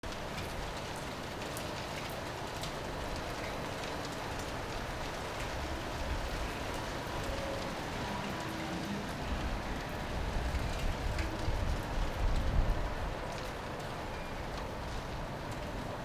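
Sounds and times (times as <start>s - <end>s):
light rain pattering: 0.0s - 16.0s
wind rumble on microphone: 4.8s - 13.6s.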